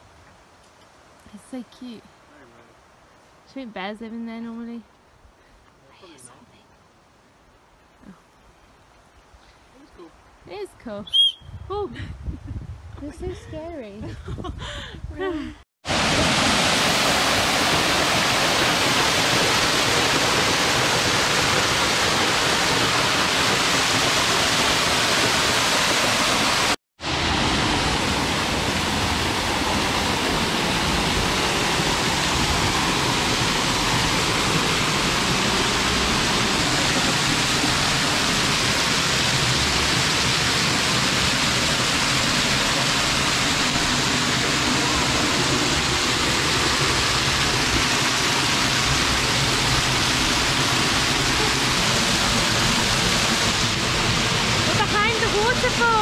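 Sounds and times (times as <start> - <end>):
waterfall rushing: 15.8 - 56.0.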